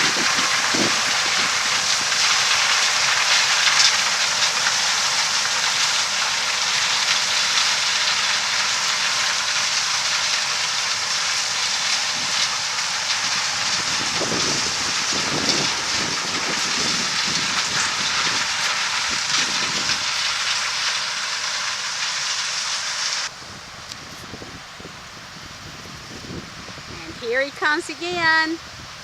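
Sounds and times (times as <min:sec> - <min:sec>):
combine harvester rushing noise: 0:00.0 - 0:29.0.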